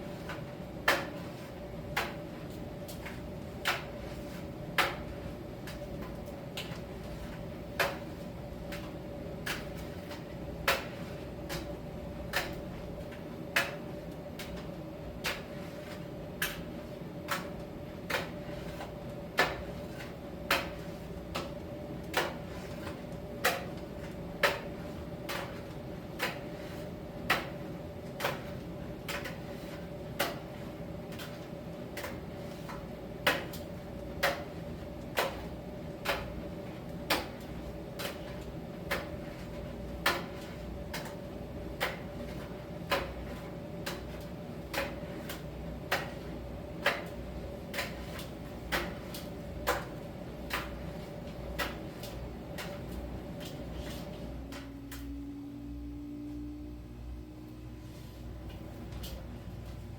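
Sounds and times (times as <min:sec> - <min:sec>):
dryer humming: 0:16.1 - 0:59.9.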